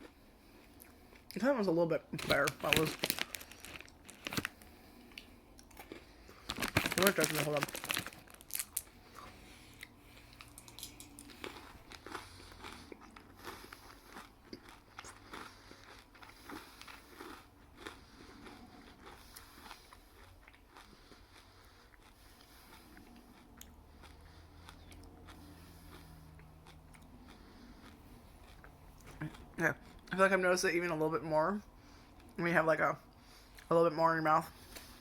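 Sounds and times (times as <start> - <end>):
chewing crunchy candy: 0.0 - 30.4.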